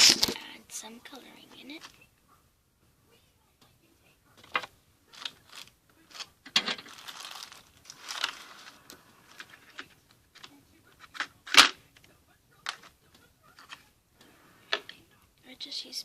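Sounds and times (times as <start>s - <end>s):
rustling and scraping: 4.4s - 15.0s.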